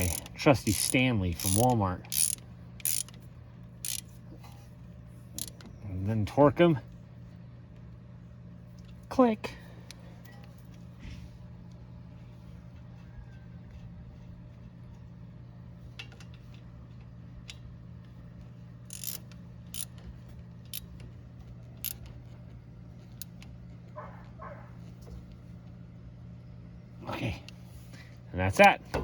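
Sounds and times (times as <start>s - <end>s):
hand tools clicking on metal: 0.0s - 3.2s, 3.8s - 4.0s, 5.4s - 5.6s, 18.9s - 20.0s.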